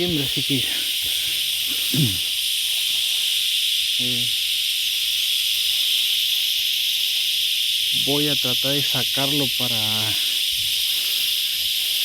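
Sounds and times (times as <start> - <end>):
cicadas buzzing: 0.0 - 12.0
man's short vocal sound: 1.8 - 2.2.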